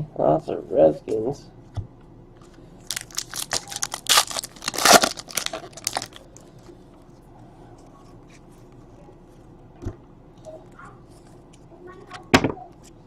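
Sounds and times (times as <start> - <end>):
plastic wrapper tearing and crinkling: 2.8 - 6.4.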